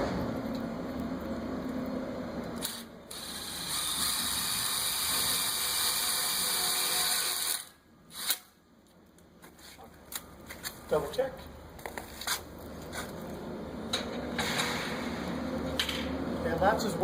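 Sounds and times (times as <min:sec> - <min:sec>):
power drill driving screws: 0:02.6 - 0:08.5.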